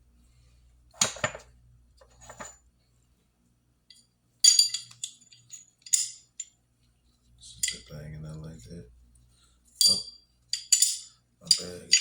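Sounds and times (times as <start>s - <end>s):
metal parts clicking and clinking: 4.4s - 6.5s, 9.8s - 12.0s.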